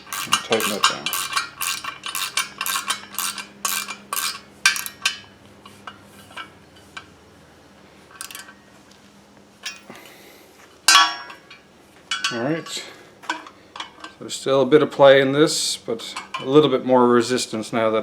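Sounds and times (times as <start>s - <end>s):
ratchet wrench clicking: 0.0s - 5.2s, 8.2s - 8.5s.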